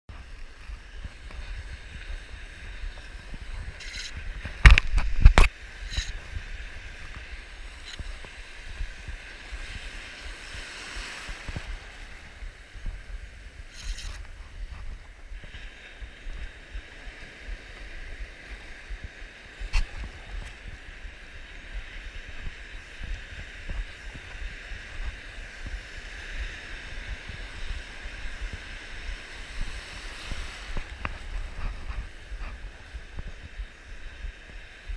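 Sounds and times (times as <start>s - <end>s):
wind rumbling on microphone: 0.0s - 34.9s.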